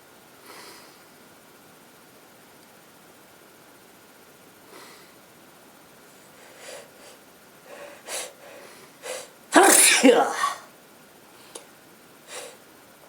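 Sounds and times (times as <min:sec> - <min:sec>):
person catching breaths before sneeze: 0:06.4 - 0:10.6, 0:12.3 - 0:12.6.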